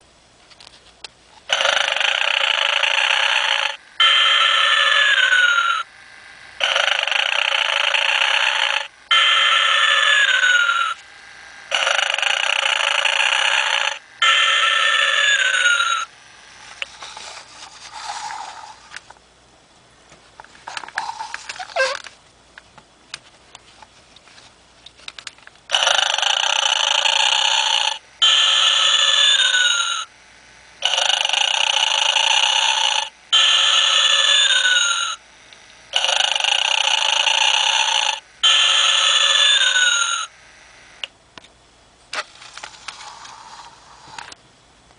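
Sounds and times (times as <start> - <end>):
toy snoring sound: 1.5 - 5.9, 6.6 - 11.0, 11.7 - 16.1, 16.9 - 19.0, 20.9 - 22.1, 25.7 - 30.1, 30.8 - 35.2, 35.9 - 40.3.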